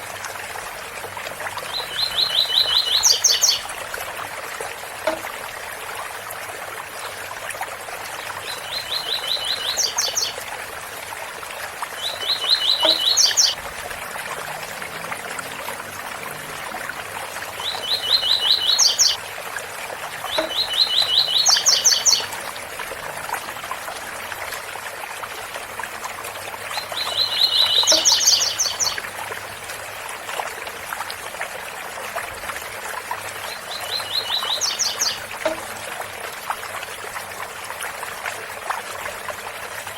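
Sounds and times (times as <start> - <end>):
bird singing: 1.7 - 3.6, 8.5 - 10.4, 12.0 - 13.6, 17.6 - 19.2, 20.3 - 22.3, 26.9 - 29.0, 33.5 - 35.7
waterfall rushing: 12.0 - 19.2.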